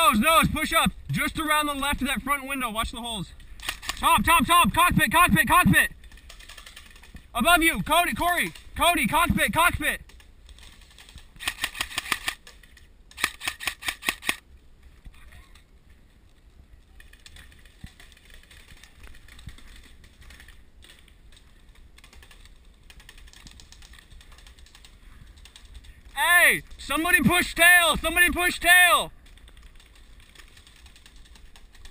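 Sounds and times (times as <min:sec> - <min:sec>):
airsoft gun firing: 0:11.4 - 0:12.4, 0:13.2 - 0:14.4.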